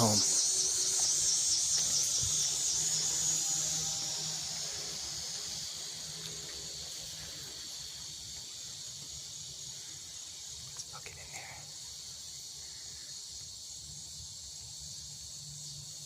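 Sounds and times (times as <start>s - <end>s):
insects buzzing drone: 0.0s - 16.0s.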